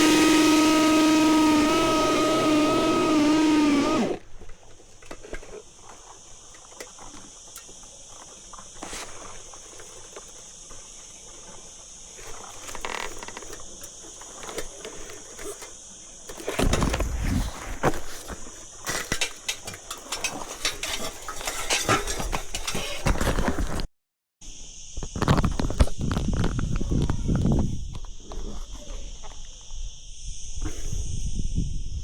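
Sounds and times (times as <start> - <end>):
noisy burst: 0.0 - 4.2
electric chainsaw motor whine: 0.0 - 4.3.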